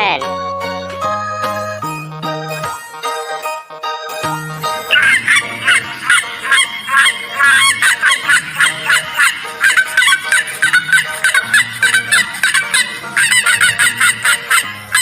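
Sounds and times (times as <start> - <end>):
chickens calling: 4.8 - 15.0.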